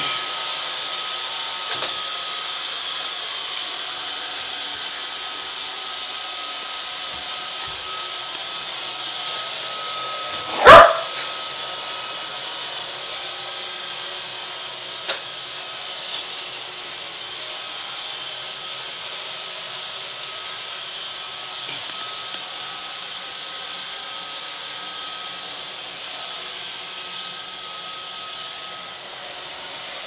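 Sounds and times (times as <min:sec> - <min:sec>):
robot vacuum humming and whining: 0:00.0 - 0:30.0
dog bark: 0:10.5 - 0:11.2.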